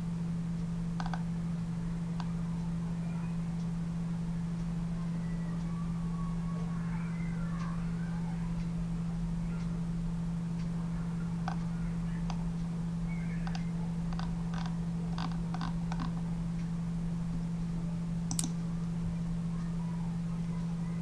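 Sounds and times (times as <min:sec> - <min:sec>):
steady low hum: 0:00.0 - 0:21.0
keyboard and mouse clicks: 0:01.0 - 0:01.3, 0:13.4 - 0:16.2, 0:18.3 - 0:18.6.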